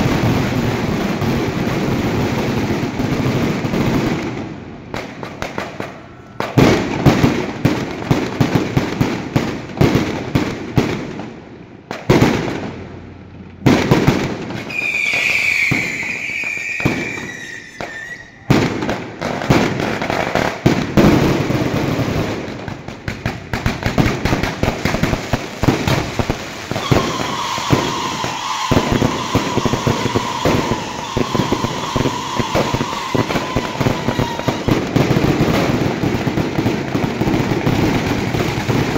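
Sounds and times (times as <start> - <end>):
whistling firework: 0.0 - 9.1, 13.8 - 22.8, 24.0 - 38.9
firecrackers crackling: 0.0 - 38.9
firework bangs: 0.0 - 38.9
long steady whistle: 14.7 - 18.5, 26.8 - 34.8.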